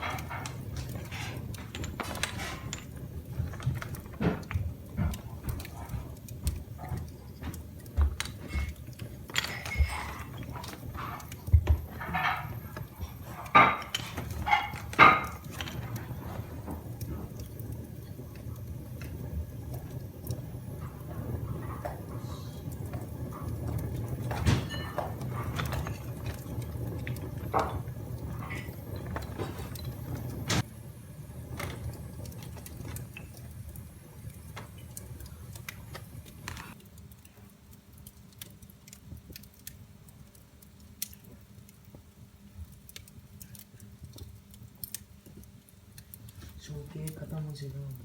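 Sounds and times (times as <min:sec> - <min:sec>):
sharp fire pops: 0:00.0 - 0:37.3
wood fire crackling: 0:00.0 - 0:48.0.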